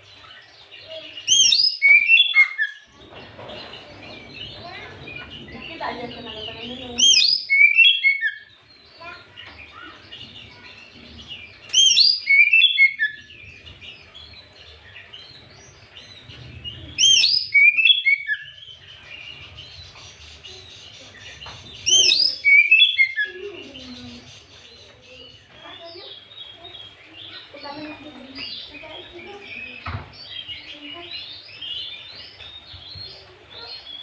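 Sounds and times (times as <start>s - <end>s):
soft bird chirps and chatter: 0.0s - 34.0s
bird whistled song phrases: 1.2s - 2.9s, 7.0s - 8.6s, 11.7s - 13.3s, 17.0s - 18.7s, 21.8s - 23.5s.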